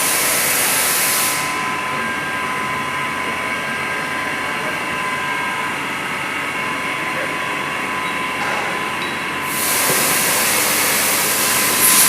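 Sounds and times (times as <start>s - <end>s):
milling machine whine: 0.0s - 12.0s
loud hiss: 9.5s - 12.0s.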